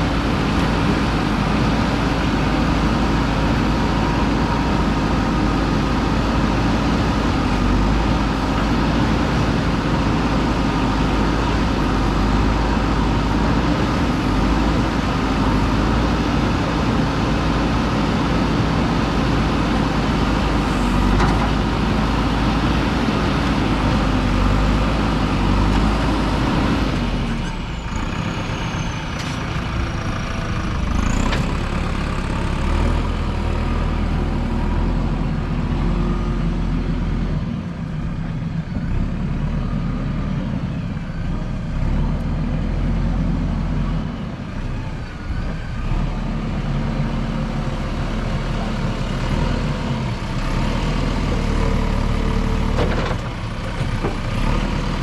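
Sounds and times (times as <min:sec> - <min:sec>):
backhoe diesel engine working: 0:00.0 - 0:55.0
faint high squeal: 0:27.3 - 0:29.6.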